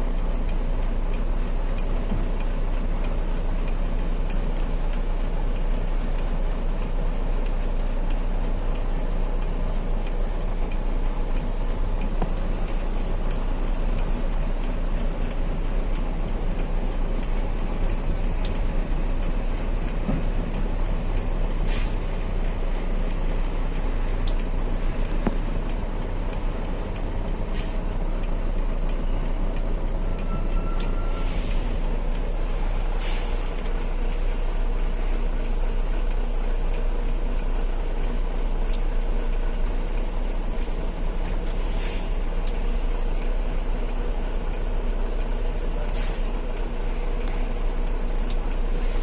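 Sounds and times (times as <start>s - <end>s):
faint regular tick: 0.0s - 49.0s
heavy truck engine and road noise: 0.0s - 49.0s
short air hiss: 21.6s - 22.1s, 33.0s - 33.4s, 41.7s - 42.2s, 45.9s - 46.4s.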